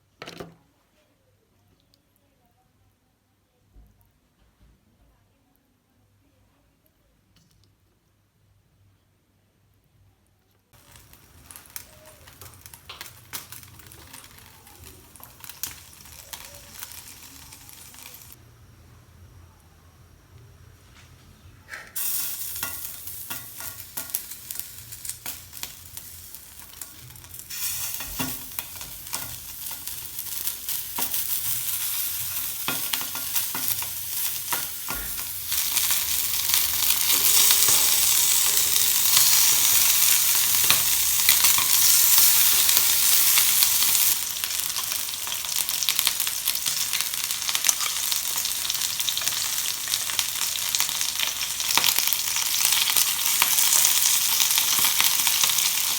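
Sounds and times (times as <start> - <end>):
food sizzling in a pan: 10.8 - 18.6, 21.9 - 55.9.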